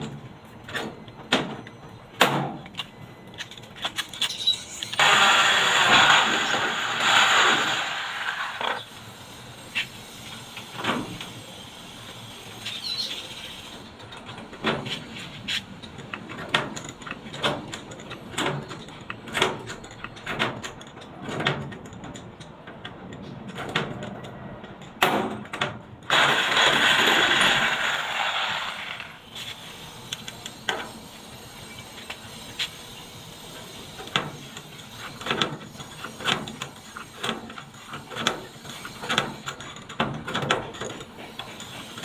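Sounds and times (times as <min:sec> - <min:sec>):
loud hissing: 0:05.0 - 0:10.3.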